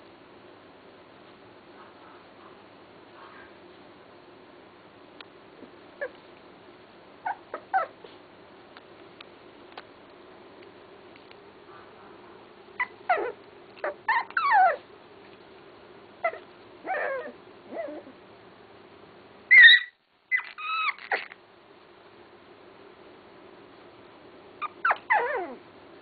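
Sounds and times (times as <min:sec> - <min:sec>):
puppy whimpering and whining: 0:06.0 - 0:06.2, 0:07.2 - 0:08.2, 0:12.8 - 0:14.9, 0:16.2 - 0:18.2, 0:19.5 - 0:21.4, 0:24.6 - 0:25.6.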